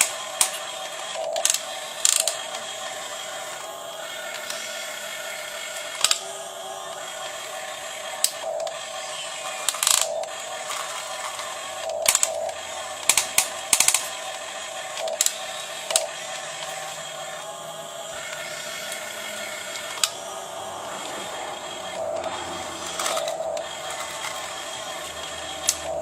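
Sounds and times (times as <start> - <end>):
small electric motors whining: 0.0 - 26.0.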